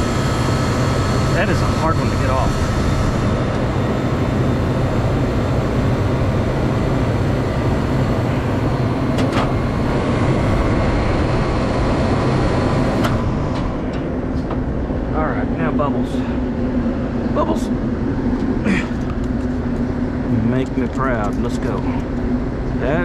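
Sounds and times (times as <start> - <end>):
freezer unit humming: 0.0 - 23.0.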